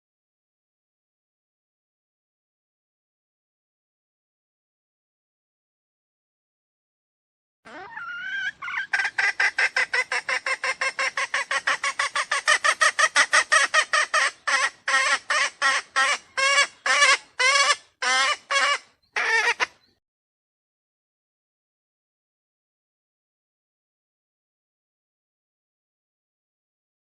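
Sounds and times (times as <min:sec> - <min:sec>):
junglefowl lure call: 0:07.7 - 0:19.9.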